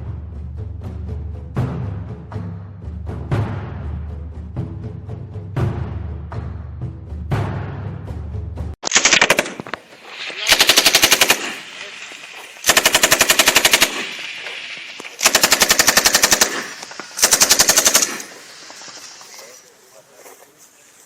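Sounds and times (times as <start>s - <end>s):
background music: 0.0s - 8.8s
machine gun firing bursts: 8.8s - 19.2s.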